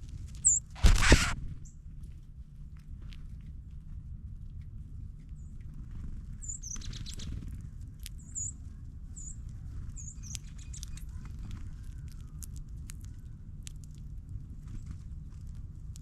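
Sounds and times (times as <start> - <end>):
steady low rumble: 0.0 - 16.0
songbirds chip calls: 0.4 - 1.3, 6.4 - 13.5
brief rustle: 0.7 - 1.4
birds pecking seed clicks: 4.5 - 8.5, 9.3 - 16.0.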